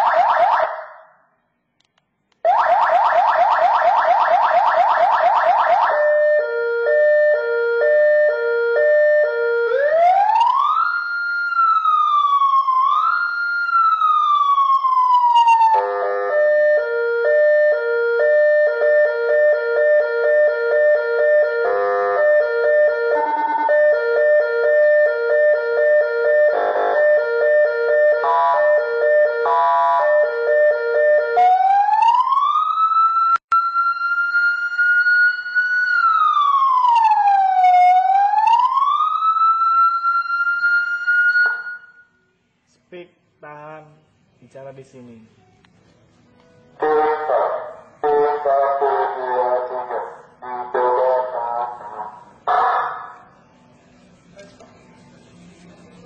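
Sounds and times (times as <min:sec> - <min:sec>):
electronic siren cycling tones: 0:00.0 - 0:01.0, 0:02.4 - 0:42.1.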